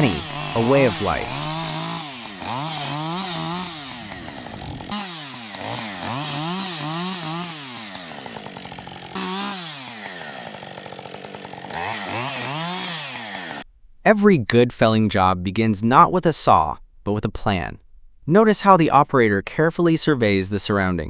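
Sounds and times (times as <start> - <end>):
chainsaw engine revving: 0.0 - 13.6.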